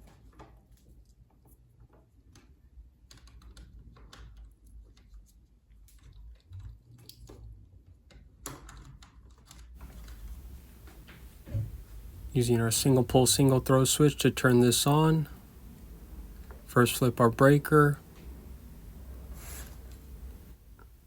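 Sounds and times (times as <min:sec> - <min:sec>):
steady low hum: 0:09.8 - 0:21.0.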